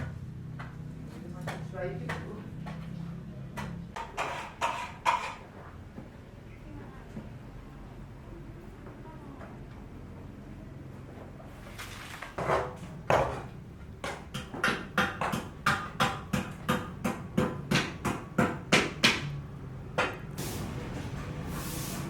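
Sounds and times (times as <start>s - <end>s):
hammer strikes: 14.0s - 19.4s.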